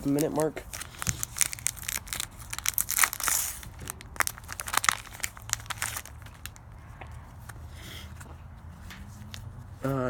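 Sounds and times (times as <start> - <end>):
plastic wrapper crinkling and tearing: 0.0 - 6.8.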